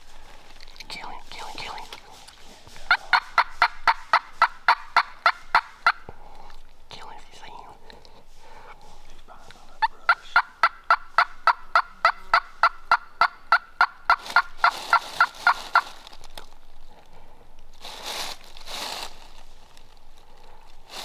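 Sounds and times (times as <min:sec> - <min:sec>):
turkey gobbling: 0:02.2 - 0:06.6, 0:09.7 - 0:16.2
turkey yelps: 0:02.9 - 0:06.1, 0:09.8 - 0:15.9.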